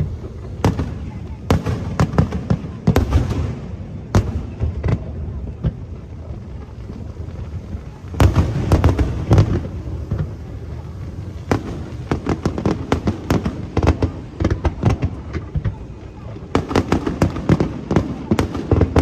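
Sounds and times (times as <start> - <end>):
fireworks bursting: 0.0 - 19.0.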